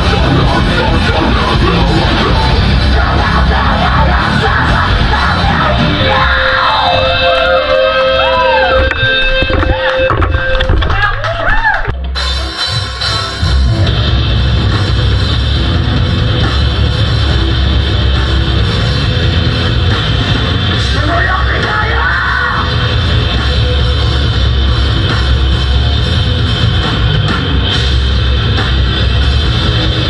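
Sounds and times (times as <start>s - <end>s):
distorted electric guitars: 0.0s - 30.0s
heavy drum kit: 0.0s - 30.0s
live metal band playing: 0.0s - 30.0s.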